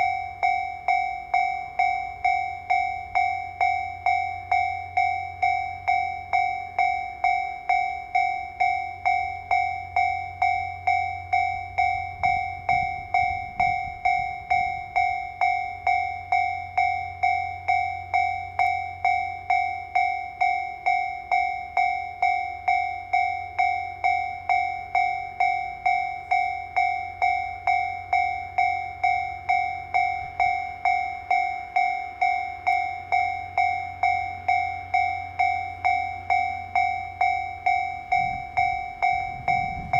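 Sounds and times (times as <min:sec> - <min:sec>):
level crossing alarm bell: 0:00.0 - 0:39.9
low steady rumble: 0:00.0 - 0:39.9.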